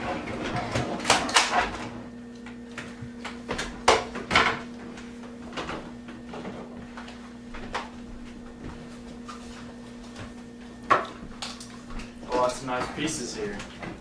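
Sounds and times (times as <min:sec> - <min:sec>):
steady low hum: 0:00.0 - 0:14.0
knocks and clunks of objects: 0:02.8 - 0:04.7.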